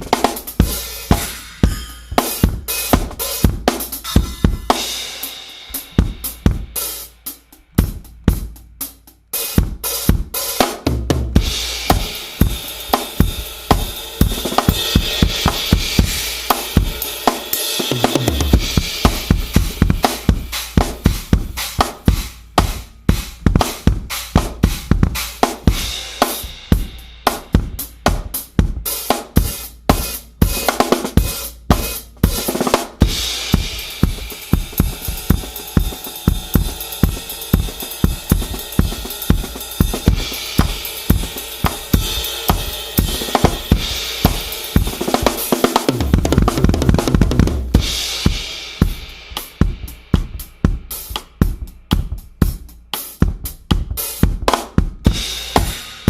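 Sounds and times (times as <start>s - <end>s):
low drum booming: 0.0s - 5.0s, 33.0s - 49.0s
cymbals washing: 0.0s - 7.3s, 29.5s - 45.9s
drum kit played busily: 0.0s - 56.0s.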